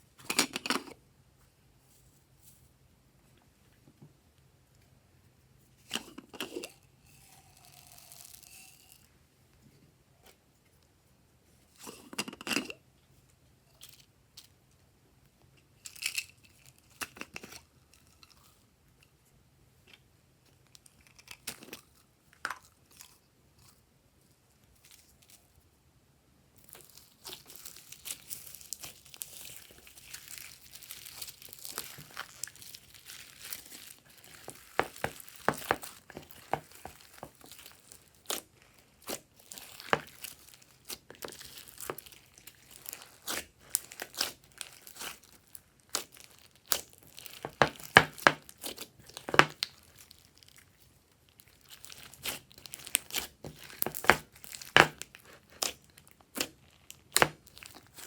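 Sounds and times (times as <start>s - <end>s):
slime squishing and popping: 26.8s - 58.0s.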